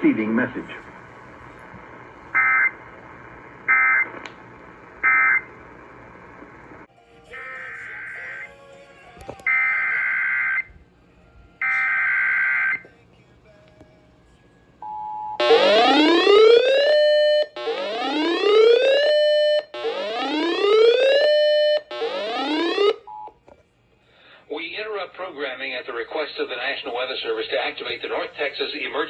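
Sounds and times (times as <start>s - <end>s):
rising whooping alert tones: 15.4s - 23.0s.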